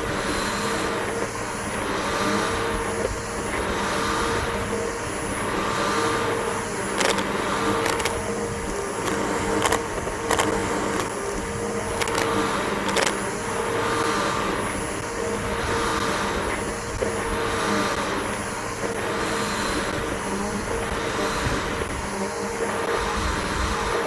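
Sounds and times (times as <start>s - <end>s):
vacuum cleaner motor whine: 0.0s - 24.0s
sharp clicks: 6.9s - 13.2s.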